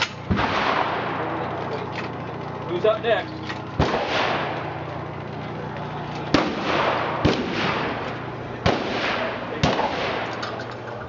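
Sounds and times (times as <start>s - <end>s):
shotgun blasts with echo: 0.0s - 1.5s, 3.8s - 4.8s, 6.3s - 10.5s.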